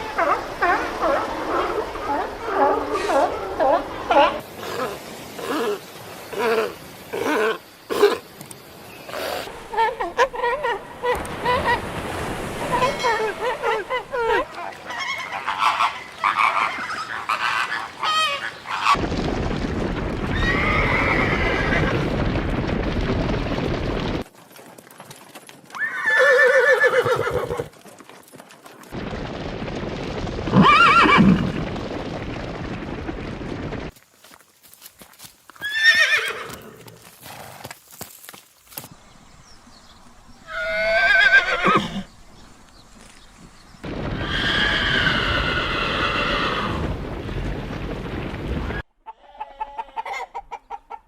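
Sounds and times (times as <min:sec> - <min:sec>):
wind-like outdoor noise: 0:00.0 - 0:51.0
horses whinnying: 0:20.3 - 0:22.1, 0:25.7 - 0:27.8, 0:30.5 - 0:31.6, 0:35.6 - 0:37.6, 0:40.4 - 0:42.1, 0:44.2 - 0:47.0.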